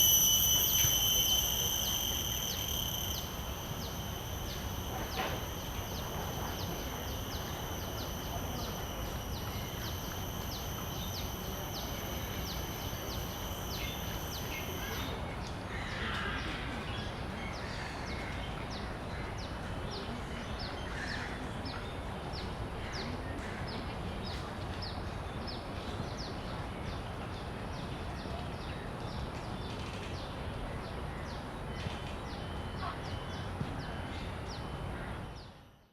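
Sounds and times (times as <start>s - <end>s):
cicada buzzing whine: 0.0s - 19.6s, 31.2s - 35.9s
cicadas pulsing call: 0.0s - 35.9s.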